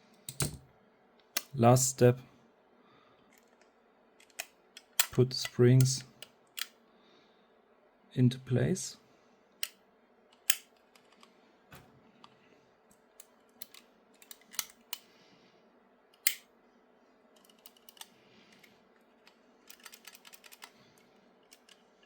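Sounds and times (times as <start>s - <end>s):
small parts clicking into place: 0.3s - 0.6s, 1.3s - 1.6s, 3.3s - 6.8s, 9.6s - 11.3s, 12.9s - 15.1s, 16.1s - 16.5s, 17.4s - 20.8s, 21.4s - 21.9s.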